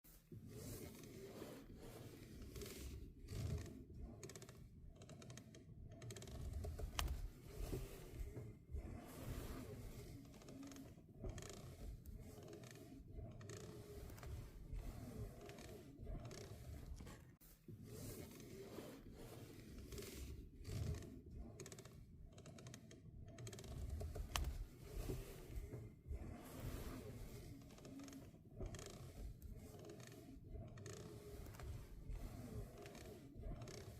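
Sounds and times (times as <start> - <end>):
steering creaking and rubbing: 0.1 - 33.9.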